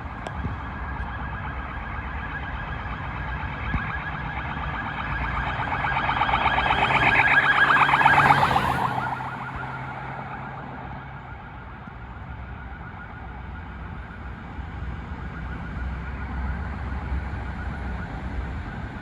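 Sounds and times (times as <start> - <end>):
low traffic rumble: 0.0 - 19.0
electronic siren warbling: 2.3 - 11.4.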